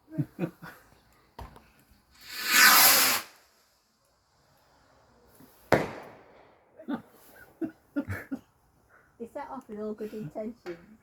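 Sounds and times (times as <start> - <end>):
firework rocket launching hiss: 2.1 - 6.5
firework bursting bang: 2.2 - 3.4, 5.7 - 6.6.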